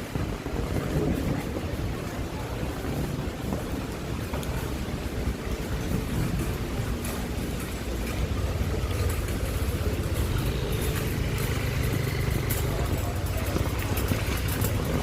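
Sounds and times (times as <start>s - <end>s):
rain hiss on wet road: 0.0s - 15.0s
road traffic rumble: 0.0s - 15.0s
vehicle engine running: 6.9s - 15.0s.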